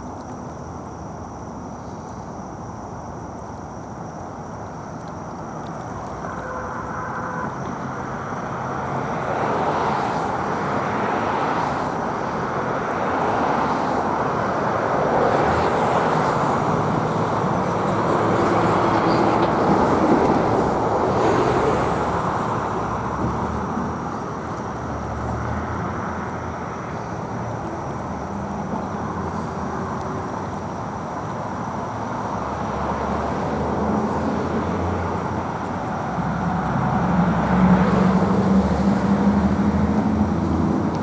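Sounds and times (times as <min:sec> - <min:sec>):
road traffic passing: 0:05.8 - 0:41.0.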